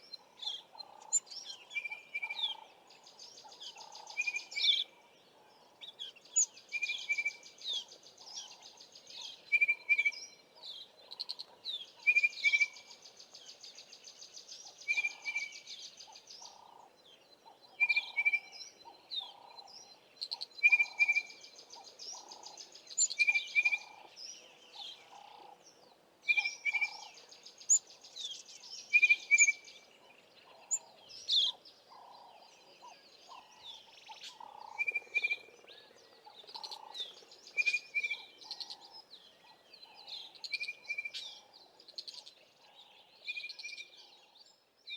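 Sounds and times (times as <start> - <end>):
wild birds singing: 0.0 - 44.9.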